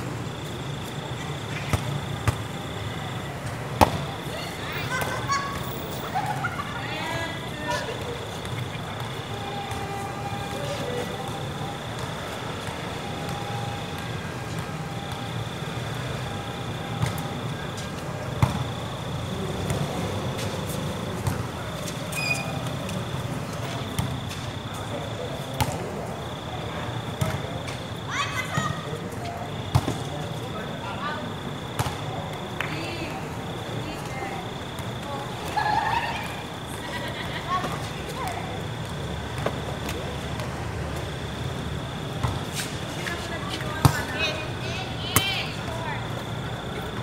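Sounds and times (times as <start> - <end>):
court ambience hum: 0.0 - 47.0
murmuring voices: 0.2 - 15.6.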